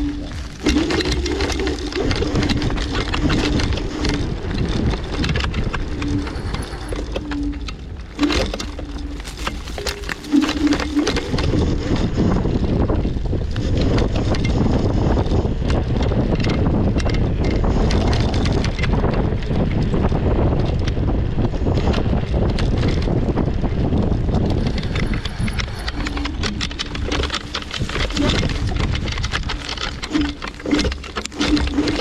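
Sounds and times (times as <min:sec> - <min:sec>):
wind buffeting microphone: 0:00.0 - 0:32.0
knocks and rattles: 0:08.1 - 0:11.5.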